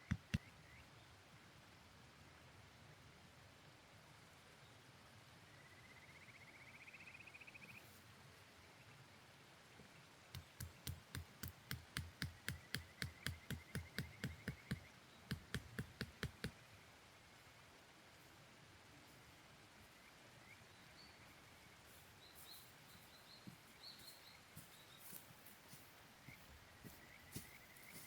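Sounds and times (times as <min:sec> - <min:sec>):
sharp knocks: 0:10.4 - 0:16.6.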